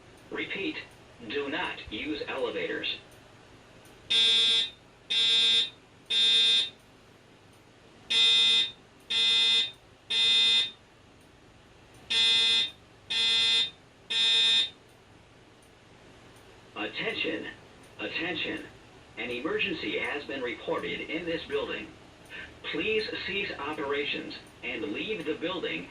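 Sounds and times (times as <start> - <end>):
buzzy alarm horn beeps: 4.1 - 6.8, 8.1 - 10.8, 12.1 - 14.8.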